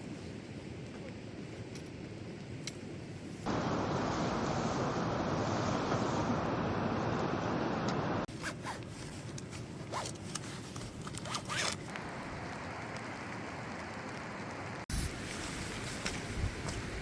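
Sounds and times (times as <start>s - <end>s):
rain and wind rushing: 3.4s - 17.0s
zipper being pulled: 8.3s - 11.9s.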